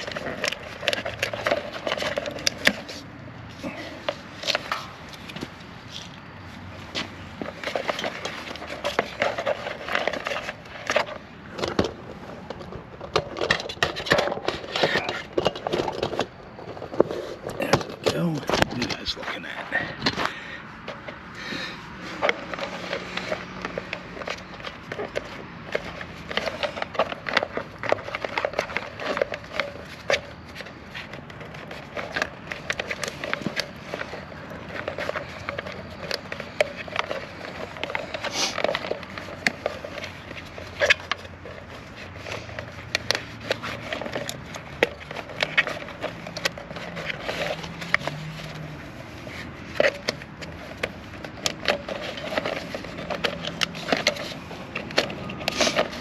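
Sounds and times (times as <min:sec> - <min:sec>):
plastic wire loom crackling: 0:22.1 - 0:56.0.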